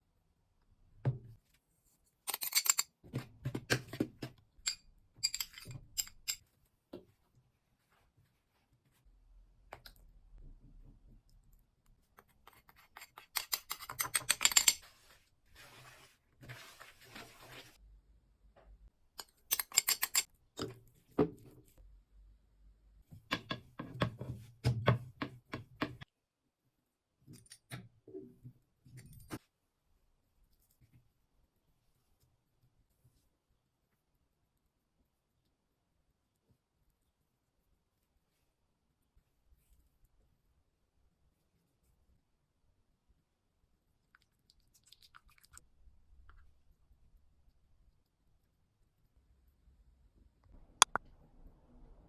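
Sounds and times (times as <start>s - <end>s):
utensils clicking and tapping: 2.3s - 2.9s, 4.6s - 6.4s, 12.5s - 14.9s, 19.2s - 20.8s.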